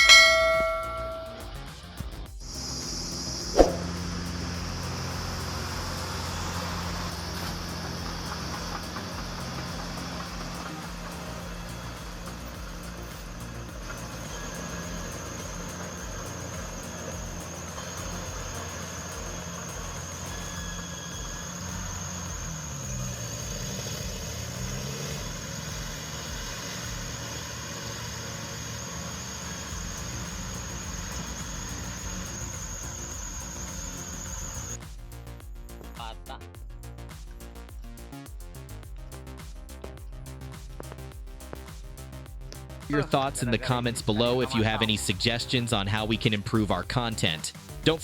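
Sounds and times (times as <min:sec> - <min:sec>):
high-pitched whine: 0:00.0 - 0:48.0
heavy machinery engine running: 0:02.6 - 0:34.8.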